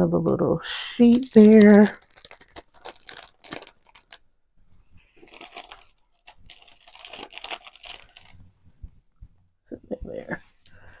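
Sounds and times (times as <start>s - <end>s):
paper and plastic crinkling: 0.7s - 4.2s, 5.0s - 8.5s.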